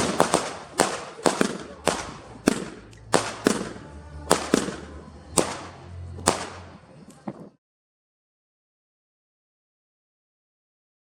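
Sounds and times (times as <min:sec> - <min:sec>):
fireworks bangs with echo: 0:00.0 - 0:07.5.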